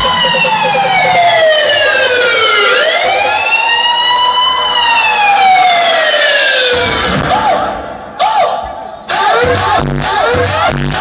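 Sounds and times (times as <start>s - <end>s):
siren wailing: 0.0s - 8.7s.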